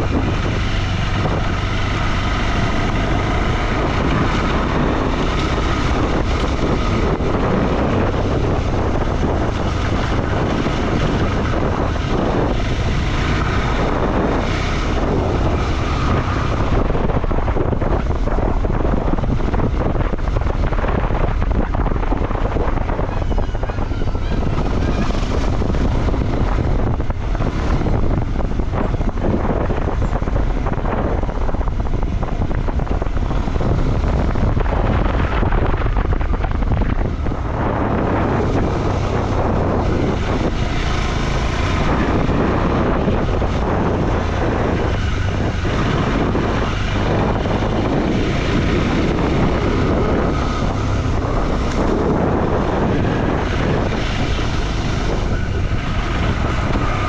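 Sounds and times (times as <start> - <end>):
motorcycle engine running: 0.0 - 57.0
wind rushing over microphone: 0.0 - 57.0.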